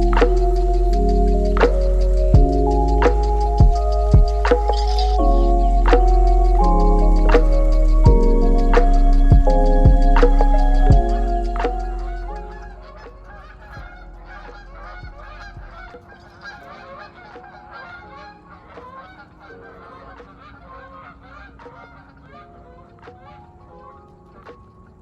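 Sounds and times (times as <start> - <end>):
soft held music notes: 0.0 - 20.7
flock of birds calling: 11.2 - 24.4.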